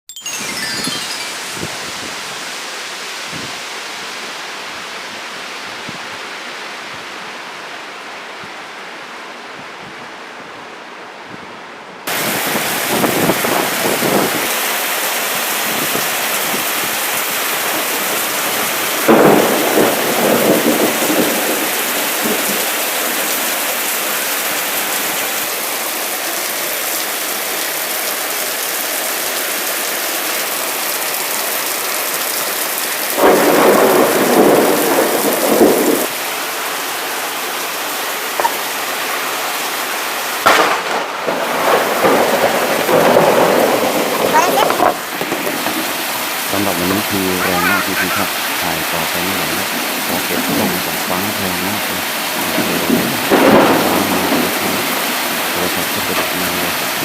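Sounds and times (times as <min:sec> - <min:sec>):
torrential rain hissing: 0:00.2 - 0:09.5, 0:12.0 - 0:57.0
thunder crashing: 0:19.0 - 0:22.6, 0:33.2 - 0:36.1, 0:40.4 - 0:46.0, 0:52.4 - 0:57.0.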